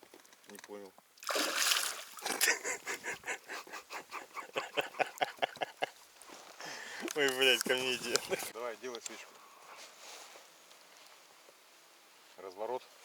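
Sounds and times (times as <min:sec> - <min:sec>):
man laughing: 0:02.2 - 0:06.0, 0:07.0 - 0:08.5.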